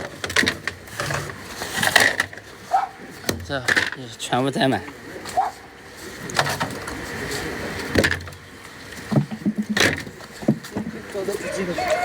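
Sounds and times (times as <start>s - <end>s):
handling knocks and rustles: 6.2s - 11.4s.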